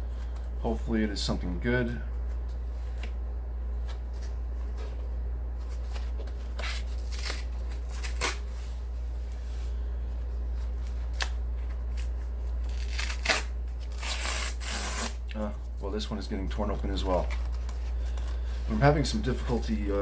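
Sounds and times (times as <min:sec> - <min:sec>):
cardboard tearing: 0:05.6 - 0:08.8, 0:11.9 - 0:15.3.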